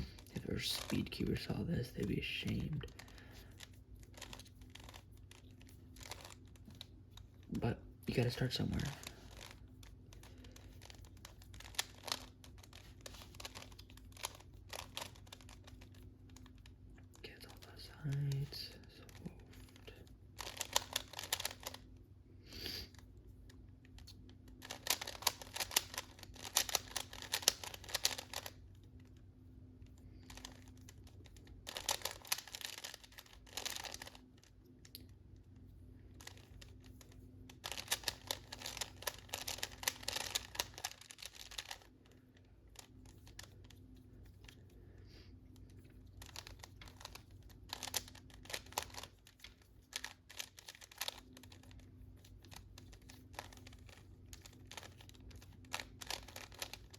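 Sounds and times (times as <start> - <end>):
puzzle cube clicking: 0.1 - 7.5, 8.2 - 16.7, 20.4 - 21.8, 24.0 - 28.6, 30.2 - 34.2, 37.5 - 41.9, 46.1 - 56.9.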